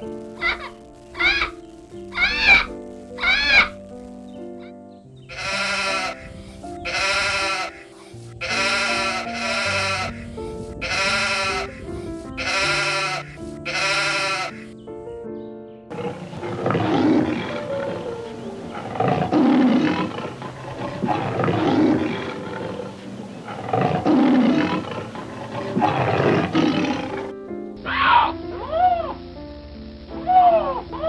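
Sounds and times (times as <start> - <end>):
background music: 0.0 - 31.0
animal bleating: 0.4 - 1.5, 2.1 - 3.8, 5.3 - 14.7, 18.7 - 29.2, 30.2 - 31.0
deep hoarse animal calls: 5.3 - 14.7, 15.9 - 29.2.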